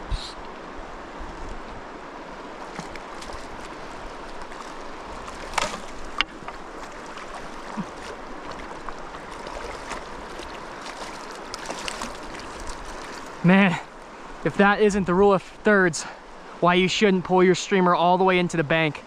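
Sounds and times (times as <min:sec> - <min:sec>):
creek water running: 0:00.0 - 0:19.0.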